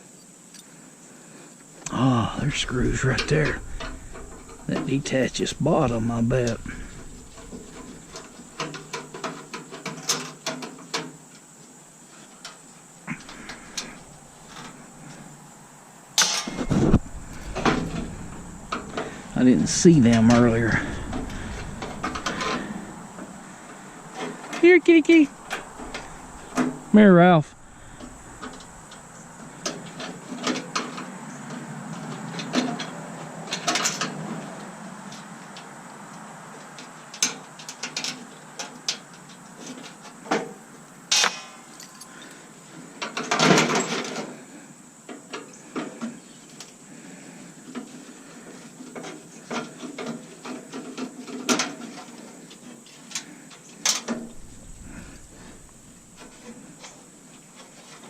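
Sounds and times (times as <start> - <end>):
scraping rattle: 1.9 - 10.6, 13.1 - 15.4, 16.2 - 30.3, 53.9 - 58.0
hand tools clicking and knocking: 6.4 - 11.4.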